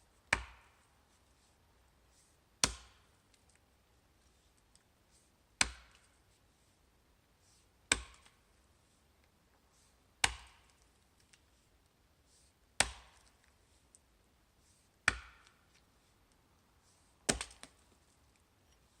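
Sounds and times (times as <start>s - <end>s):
axe chopping wood: 0.3s - 0.7s, 2.6s - 3.0s, 5.6s - 6.0s, 7.9s - 8.3s, 10.2s - 10.7s, 12.8s - 13.2s, 15.0s - 15.5s, 17.3s - 17.8s.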